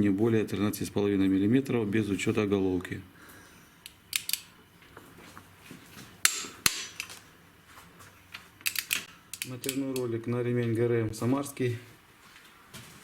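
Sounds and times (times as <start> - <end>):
clicks and knocks of small tools: 3.8 - 4.5, 8.3 - 10.1.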